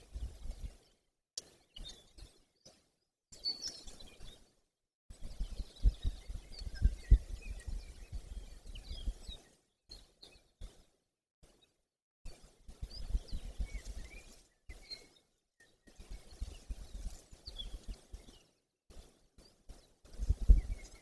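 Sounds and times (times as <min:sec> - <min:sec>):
wind gusting over microphone: 0:05.2 - 0:09.3, 0:20.1 - 0:21.0.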